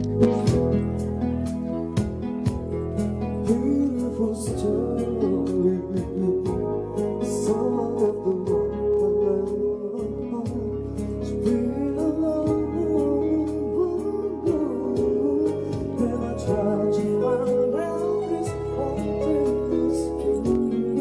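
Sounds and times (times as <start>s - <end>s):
backing track music with steady beat: 0.0s - 21.0s.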